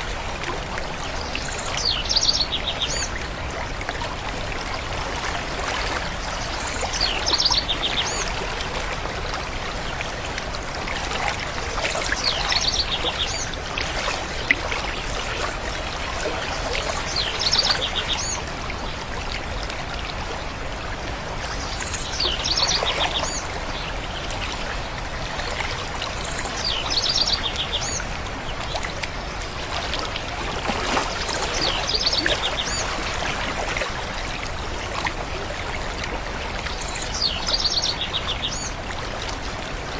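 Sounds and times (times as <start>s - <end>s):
running water: 0.0s - 39.9s
songbird singing: 26.2s - 28.1s, 36.8s - 38.8s.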